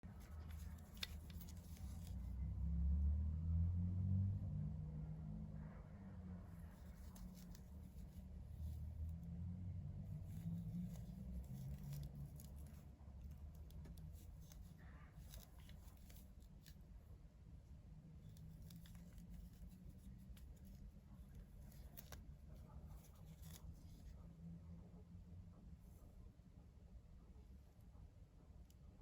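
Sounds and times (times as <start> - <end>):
light handling clicks and rustles: 0.0 - 2.4, 6.5 - 9.3, 9.9 - 24.3
low steady hum: 0.0 - 29.0.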